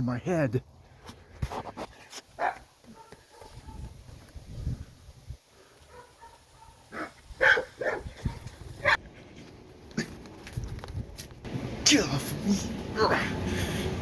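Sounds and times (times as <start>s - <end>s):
dog barking: 2.4s - 3.9s, 5.9s - 9.0s.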